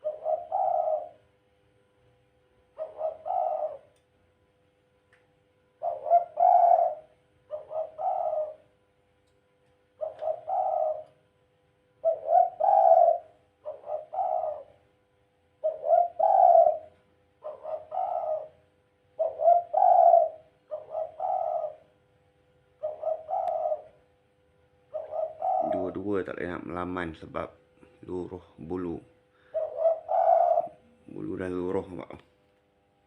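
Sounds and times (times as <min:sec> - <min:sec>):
dove cooing: 0:00.0 - 0:01.4, 0:02.7 - 0:04.0, 0:05.8 - 0:08.9, 0:09.9 - 0:11.2, 0:11.9 - 0:22.0, 0:22.6 - 0:24.2, 0:24.8 - 0:26.4, 0:29.4 - 0:32.0.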